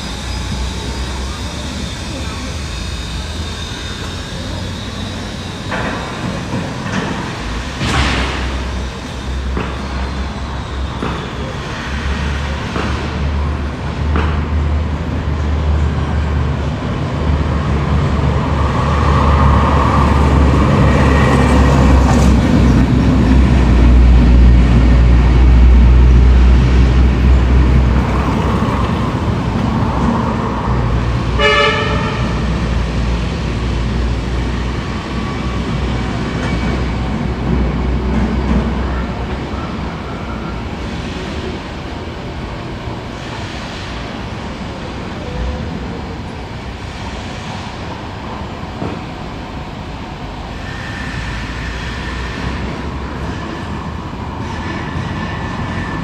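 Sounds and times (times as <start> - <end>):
heavy vehicle engine rumbling: 0.0 - 56.0
horn blast: 31.4 - 32.6.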